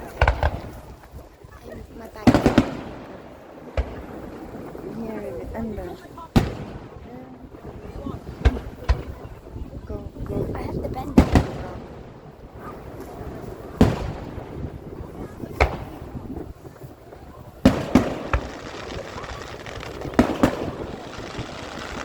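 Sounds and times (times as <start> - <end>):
fireworks booming: 0.0 - 1.1, 2.2 - 9.6, 10.2 - 22.0
background hubbub: 0.0 - 22.0.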